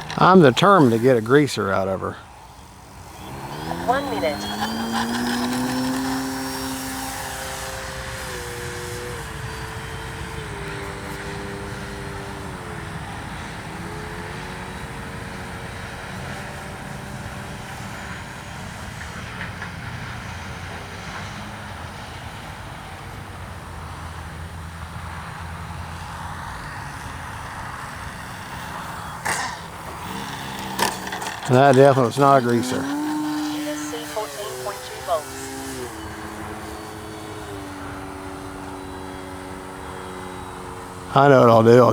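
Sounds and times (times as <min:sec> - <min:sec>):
electric model plane motor whining: 0:00.0 - 0:41.9
steady rushing background noise: 0:23.8 - 0:41.9.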